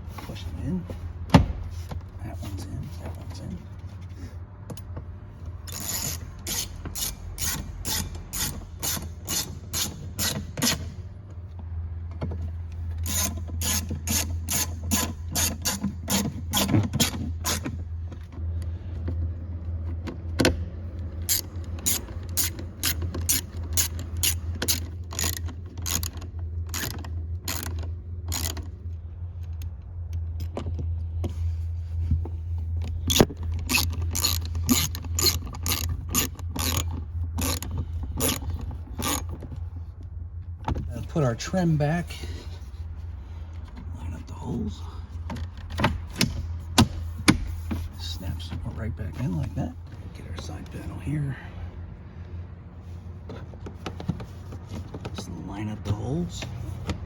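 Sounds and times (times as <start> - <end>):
steady low hum: 0.0 - 57.0
hand ratchet clicking: 5.7 - 11.0, 13.0 - 17.7, 21.2 - 28.6, 33.1 - 39.4.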